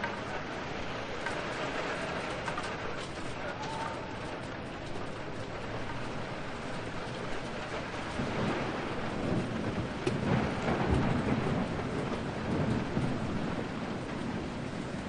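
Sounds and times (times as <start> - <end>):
steady rain falling: 0.0 - 15.0
thunder crack and rumble: 0.0 - 15.0.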